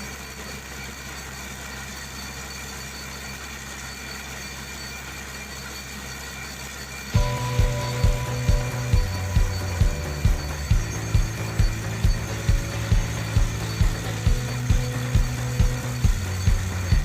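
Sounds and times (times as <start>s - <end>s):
engine droning: 7.2s - 17.0s.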